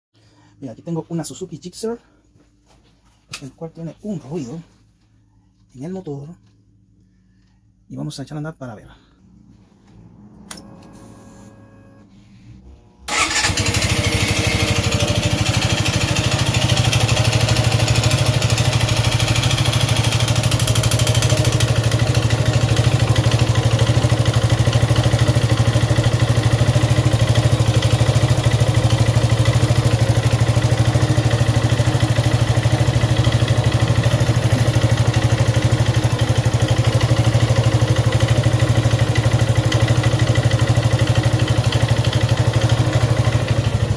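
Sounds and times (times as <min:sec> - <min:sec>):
engine noise: 0:09.3 - 0:16.0
motorcycle engine starting: 0:09.9 - 0:43.9
motorcycle engine idling: 0:13.1 - 0:43.9.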